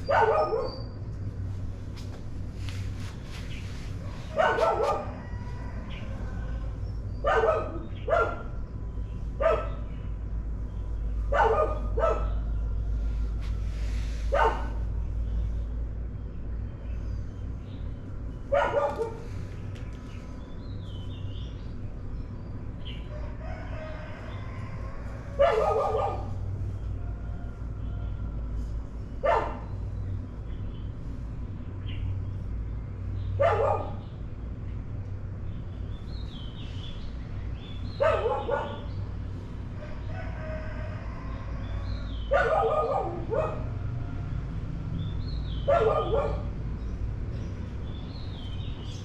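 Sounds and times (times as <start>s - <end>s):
dogs barking: 0.0s - 1.0s, 4.0s - 12.9s, 14.3s - 15.4s, 18.4s - 19.4s, 22.8s - 27.8s, 29.1s - 30.0s, 33.2s - 34.2s, 37.5s - 39.2s, 41.6s - 44.4s, 45.2s - 47.5s
steady low hum: 0.0s - 49.0s.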